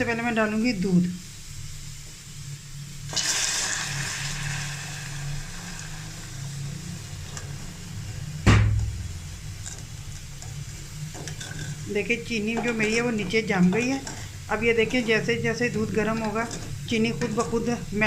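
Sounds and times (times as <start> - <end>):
milk hissing and bubbling in caramel: 0.0 - 8.4, 9.2 - 18.0
loud knock: 8.4 - 9.0.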